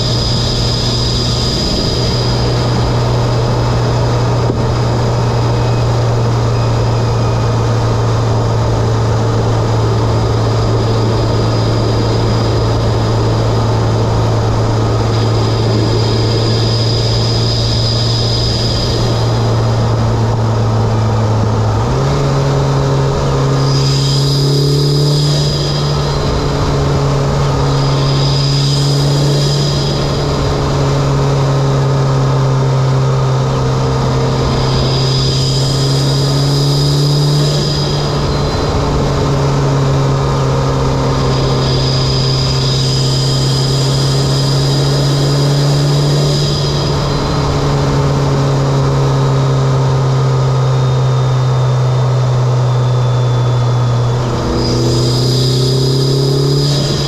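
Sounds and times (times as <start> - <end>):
turbo whistle with hiss: 0.0 - 4.1, 9.6 - 20.0, 21.9 - 30.8, 33.5 - 47.9, 49.1 - 57.0
car engine running: 0.0 - 57.0.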